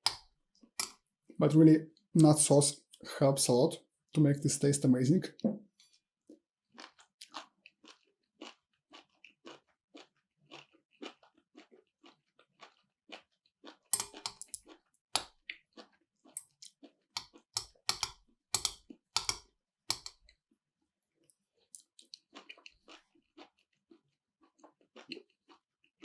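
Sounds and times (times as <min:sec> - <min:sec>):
chewing crunches: 0:06.2 - 0:20.3, 0:21.2 - 0:26.0
wet mouth clicks: 0:14.0 - 0:14.6.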